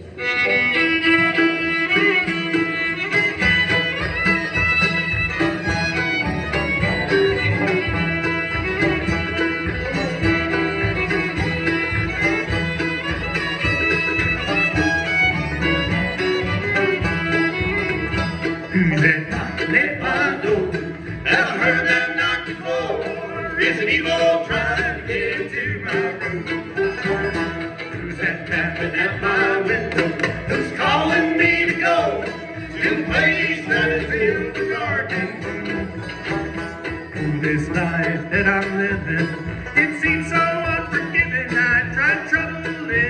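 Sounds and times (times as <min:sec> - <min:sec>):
banjo: 0:00.0 - 0:43.0
bluegrass band playing: 0:00.0 - 0:43.0
fiddle: 0:00.0 - 0:43.0
person singing: 0:18.6 - 0:36.0, 0:37.2 - 0:43.0.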